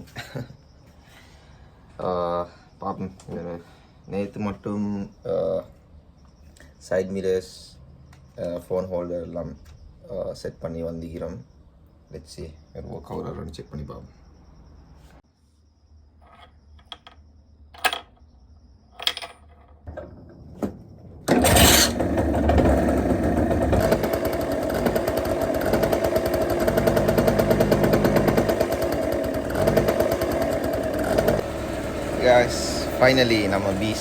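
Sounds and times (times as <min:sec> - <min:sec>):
clicks and knocks: 0:16.2 - 0:17.2, 0:17.8 - 0:18.2
scooter engine rattly idle: 0:21.3 - 0:34.0.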